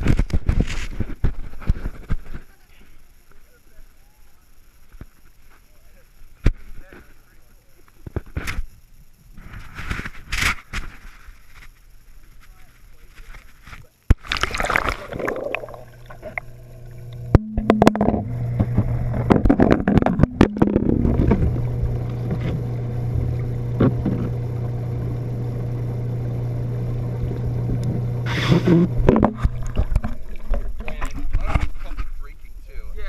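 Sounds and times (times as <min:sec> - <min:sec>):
knocks and splashes: 0:14.1 - 0:22.6, 0:29.0 - 0:31.3
hot tub jet pump humming: 0:14.1 - 0:33.0
churning water: 0:14.2 - 0:31.3.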